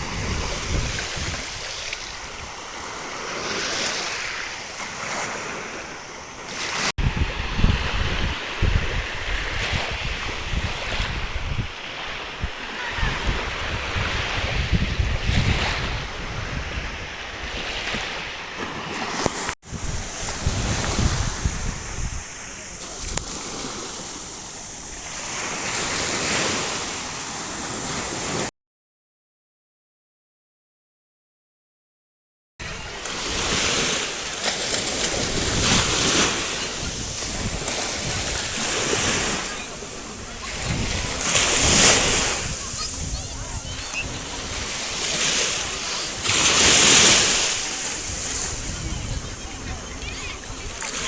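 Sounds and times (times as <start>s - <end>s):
wind buffeting microphone: 0.0s - 3.0s, 6.8s - 25.4s, 34.6s - 51.0s
sea waves washing onto beach: 0.0s - 28.5s, 32.6s - 51.0s.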